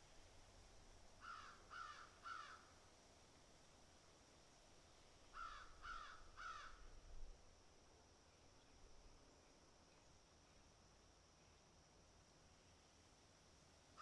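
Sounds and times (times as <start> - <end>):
crow cawing: 1.2 - 2.7, 5.3 - 6.8.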